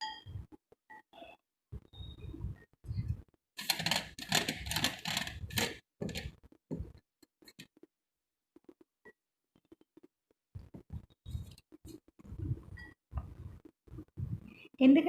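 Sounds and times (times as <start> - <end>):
pencils clattering and scraping: 3.6 - 6.4.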